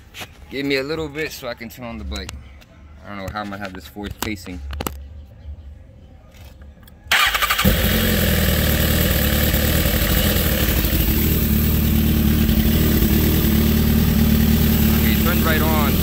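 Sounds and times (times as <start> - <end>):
electric starter cranking: 7.1 - 11.0
motorcycle engine idling: 7.1 - 16.0.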